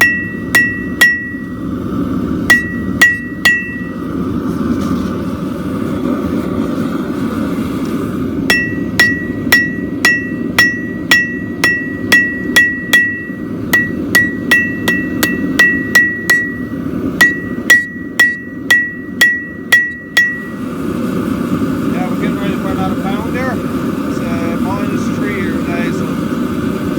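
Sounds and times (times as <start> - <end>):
hammer ringing on anvil: 0.0 - 1.7, 2.5 - 4.0, 8.5 - 20.6.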